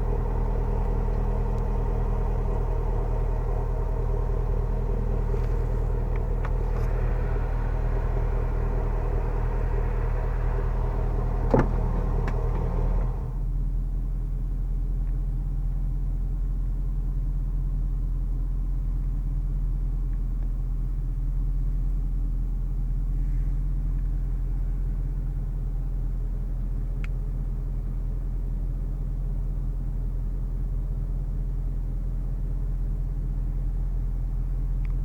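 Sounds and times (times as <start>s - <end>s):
road noise: 0.0s - 13.4s
car engine cruising drone: 0.0s - 13.6s
faint click: 34.8s - 35.0s.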